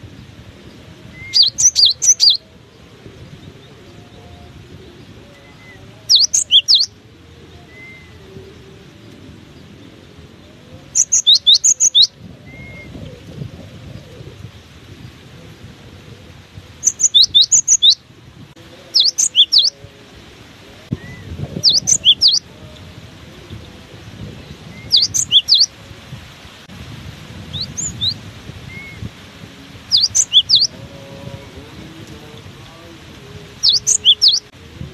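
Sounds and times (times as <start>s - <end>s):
wind rumble on microphone: 0.0s - 34.9s
bird singing high notes: 1.0s - 2.4s, 5.3s - 9.0s, 10.7s - 13.0s, 16.8s - 18.0s, 18.8s - 19.8s, 20.9s - 22.8s, 24.7s - 25.8s, 27.5s - 29.1s, 29.9s - 31.7s, 33.6s - 34.5s.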